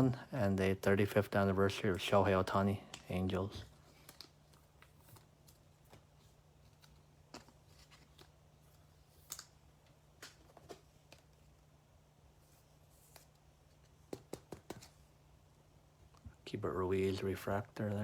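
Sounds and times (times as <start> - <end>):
low steady hum: 0.0 - 18.0
trading cards being handled: 1.7 - 11.7, 12.4 - 15.1.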